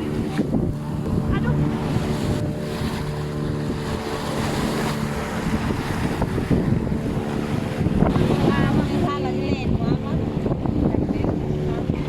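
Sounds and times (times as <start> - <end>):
motorboat engine running: 0.0 - 12.0
waves splashing: 0.0 - 12.0
wind buffeting microphone: 0.0 - 12.0.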